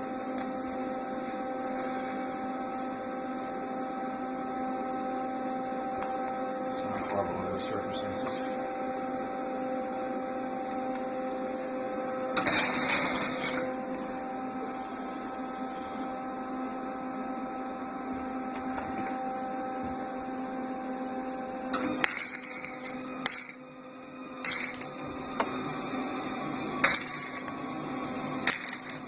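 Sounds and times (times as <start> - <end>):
electrical hum: 0.0 - 29.0
welding arc crackling: 12.4 - 13.7, 21.8 - 23.6, 24.4 - 25.0, 26.8 - 27.5, 28.4 - 29.0.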